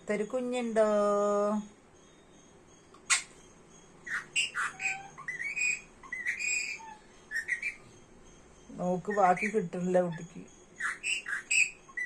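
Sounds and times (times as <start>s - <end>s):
parrot chirping and squawking: 3.0s - 8.0s, 9.0s - 12.0s.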